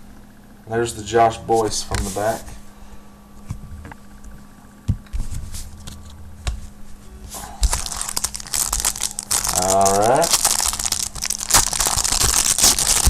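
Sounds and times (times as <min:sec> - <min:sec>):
steady low hum: 0:00.0 - 0:13.0
foil wrapper crinkling: 0:07.4 - 0:13.0.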